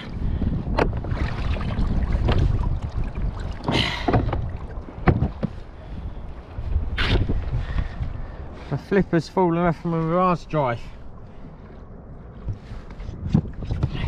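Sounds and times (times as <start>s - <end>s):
wind rumbling on microphone: 0.0s - 14.0s
water splash: 0.9s - 5.1s.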